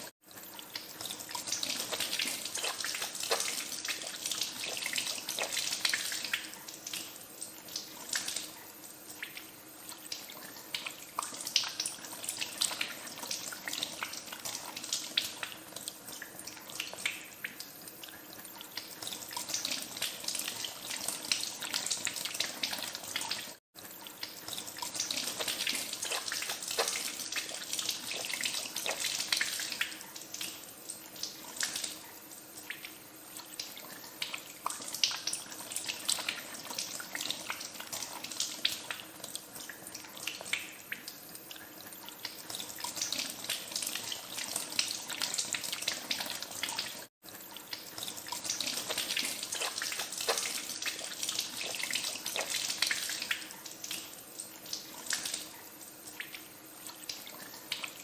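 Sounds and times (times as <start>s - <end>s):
hands washing and splashing: 0.0s - 17.8s, 24.2s - 32.0s, 32.6s - 58.0s.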